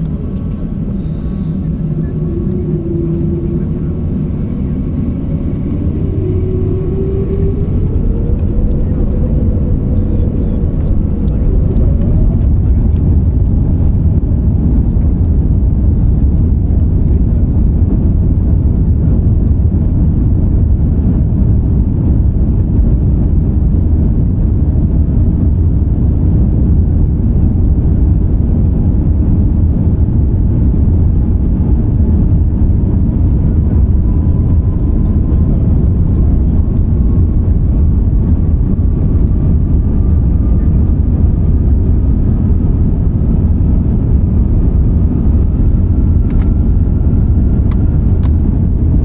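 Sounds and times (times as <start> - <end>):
faint rising whine: 0.0 - 14.7, 31.4 - 49.0
jet engines rumbling in cabin: 0.0 - 49.0.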